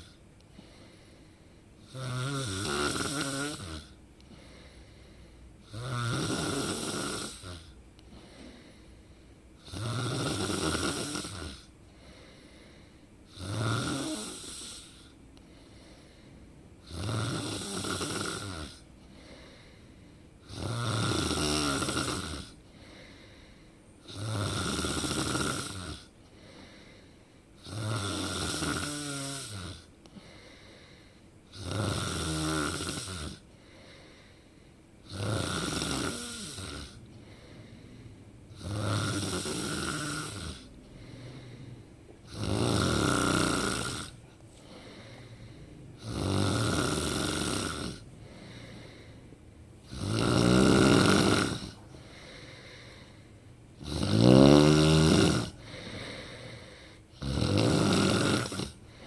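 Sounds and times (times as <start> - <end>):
faint breathing: 0.0 - 2.0, 3.2 - 5.7, 7.2 - 9.6, 10.8 - 13.4, 14.3 - 16.9, 18.7 - 20.5, 22.5 - 24.0, 25.7 - 27.6, 28.5 - 31.5, 33.0 - 35.0, 36.1 - 42.4, 43.2 - 50.0, 51.0 - 53.8, 54.7 - 57.2, 58.0 - 59.0
person snoring: 1.8 - 8.8, 9.6 - 15.2, 16.8 - 19.8, 20.4 - 34.4, 35.0 - 59.0.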